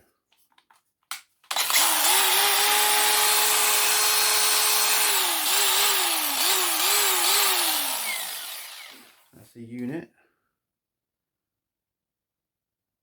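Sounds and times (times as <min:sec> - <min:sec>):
angle grinder whining: 0:01.5 - 0:09.3.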